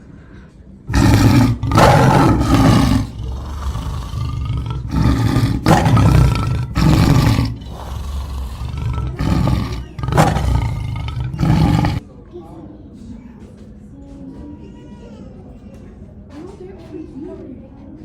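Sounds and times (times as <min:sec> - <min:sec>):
lion roaring: 0:00.9 - 0:12.0.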